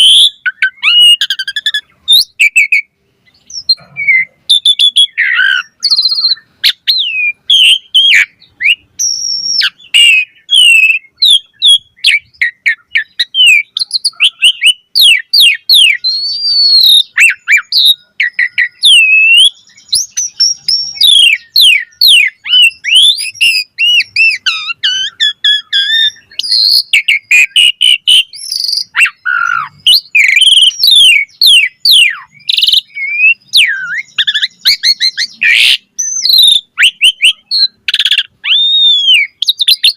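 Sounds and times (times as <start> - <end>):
starling singing: 0.0 - 39.9.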